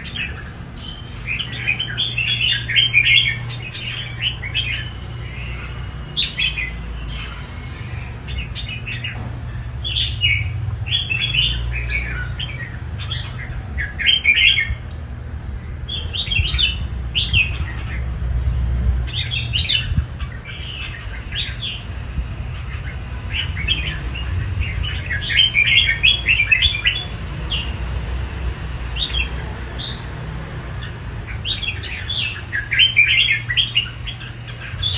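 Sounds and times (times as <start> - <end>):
bird chirping song: 0.0 - 34.9
steady low hum: 0.0 - 34.9.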